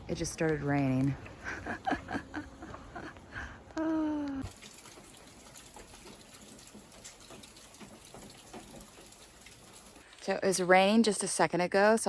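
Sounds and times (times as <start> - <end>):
rain patter: 3.8 - 10.4.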